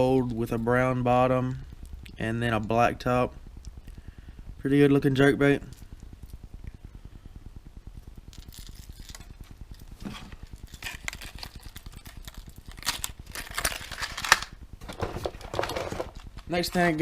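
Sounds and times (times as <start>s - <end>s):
packaging rustling and crinkling: 8.3s - 17.0s.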